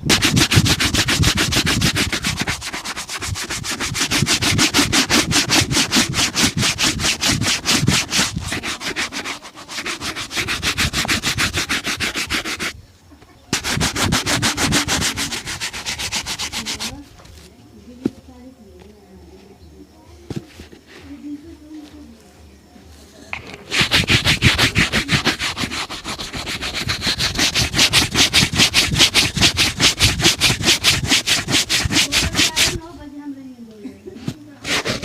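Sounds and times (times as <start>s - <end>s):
shoe being rubbed scratchily: 0.0s - 12.8s, 13.5s - 17.5s, 20.3s - 21.2s, 23.4s - 32.9s, 34.2s - 35.0s.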